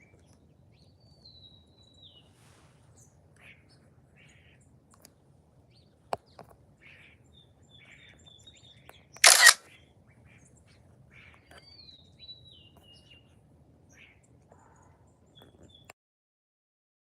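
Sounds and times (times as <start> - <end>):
harsh burst: 9.2 - 9.6
sharp click: 9.2 - 9.6.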